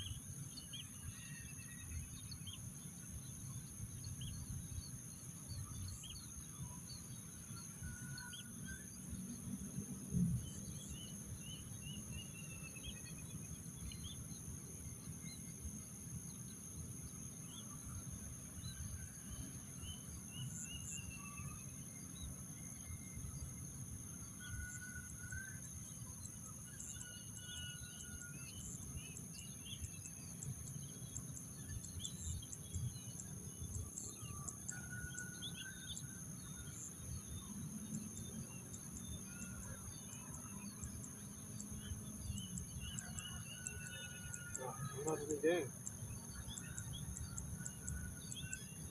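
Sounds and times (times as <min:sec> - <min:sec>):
high insect drone: 0:00.0 - 0:48.9
birds chirping: 0:41.8 - 0:45.8.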